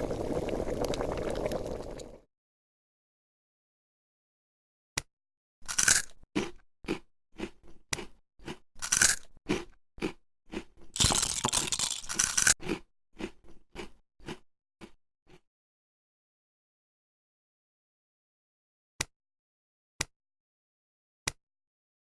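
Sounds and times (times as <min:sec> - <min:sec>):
crunchy chewing: 0:05.7 - 0:15.4.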